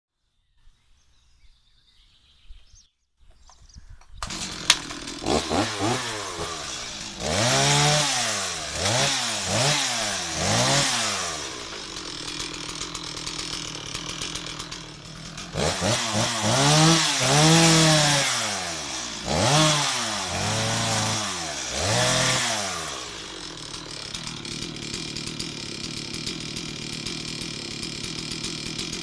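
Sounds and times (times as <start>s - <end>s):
chainsaw engine revving: 4.2s - 29.0s.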